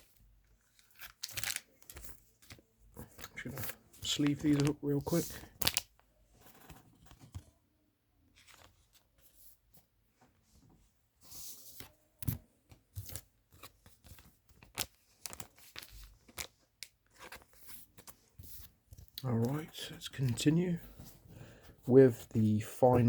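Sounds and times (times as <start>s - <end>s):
plastic sleeves crinkling: 0.0s - 6.0s, 13.0s - 21.2s.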